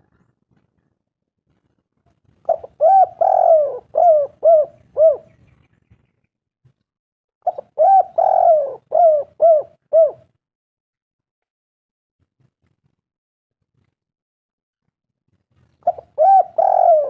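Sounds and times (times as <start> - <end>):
dove cooing: 2.4 - 5.5, 7.4 - 10.3, 15.8 - 17.0.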